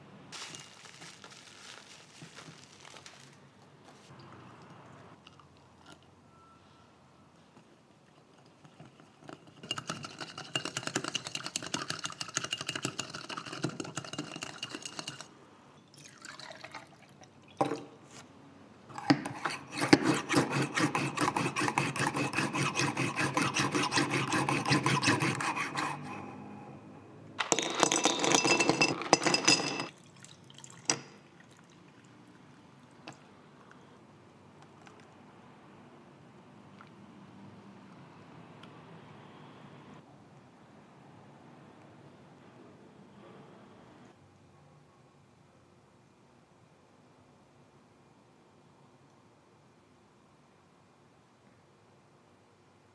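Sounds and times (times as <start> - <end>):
liquid being poured: 15.9 - 17.9, 29.9 - 32.9.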